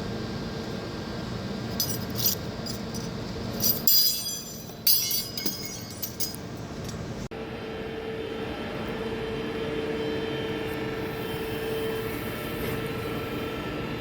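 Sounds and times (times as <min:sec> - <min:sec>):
metallic clinks of steel chips: 0:01.7 - 0:07.1.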